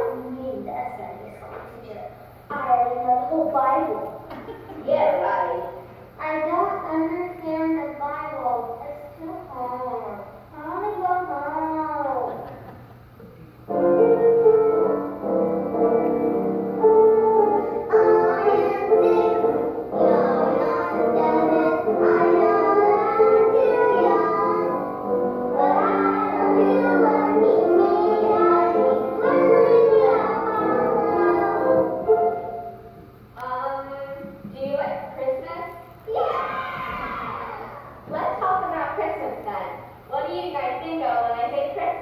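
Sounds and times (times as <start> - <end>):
instrumental accompaniment: 13.7 - 33.3
children singing: 17.5 - 32.3.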